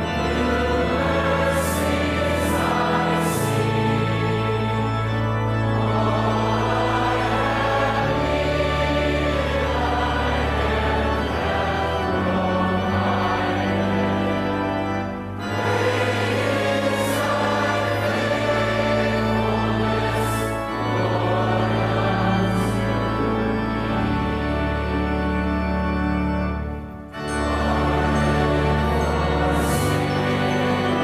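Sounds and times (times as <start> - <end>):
choir singing a hymn: 0.0 - 31.0
organ sustained low notes: 0.0 - 31.0.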